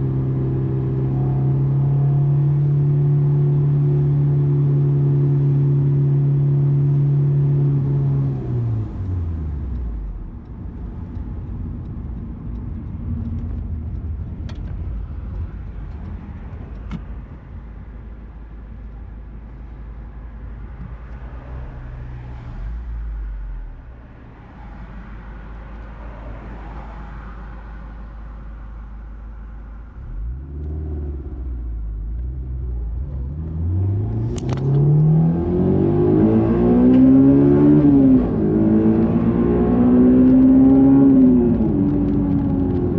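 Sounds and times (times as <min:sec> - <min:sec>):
road noise rumble: 0:00.0 - 0:42.9
car engine revving: 0:29.9 - 0:42.9.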